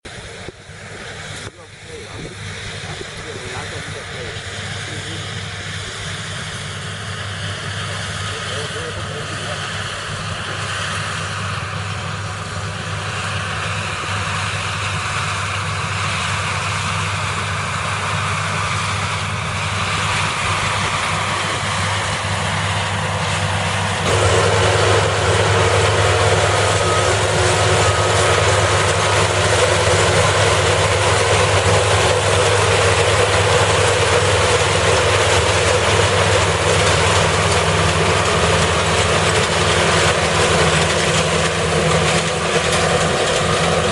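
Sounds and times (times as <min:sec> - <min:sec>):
combine harvester running: 0:00.0 - 0:43.9.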